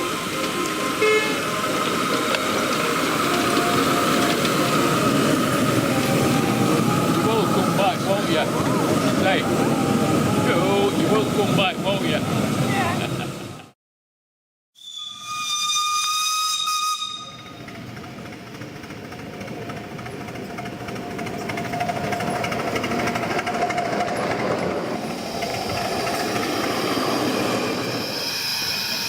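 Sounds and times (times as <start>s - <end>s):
steam locomotive whistle: 0.0s - 11.6s, 14.8s - 17.8s
steam locomotive hissing: 0.0s - 13.6s, 14.9s - 29.0s
high whistle-like tone: 14.8s - 17.6s.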